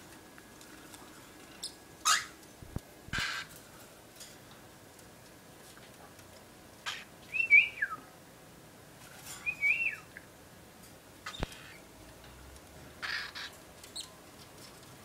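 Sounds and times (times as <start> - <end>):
cockatiel whistling: 7.3 - 8.0, 9.4 - 10.1.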